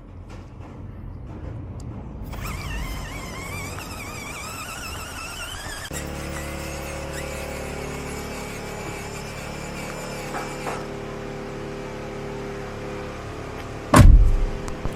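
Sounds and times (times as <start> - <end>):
small electric motor whining: 2.3 - 11.2.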